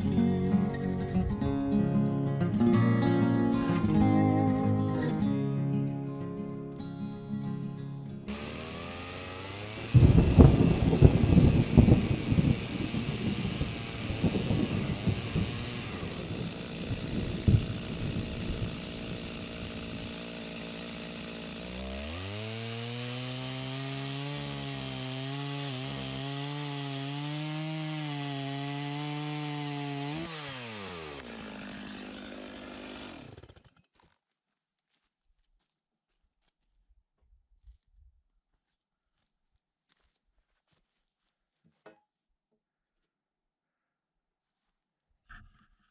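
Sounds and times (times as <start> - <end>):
chainsaw cutting log: 2.5 - 5.2, 8.3 - 34.2.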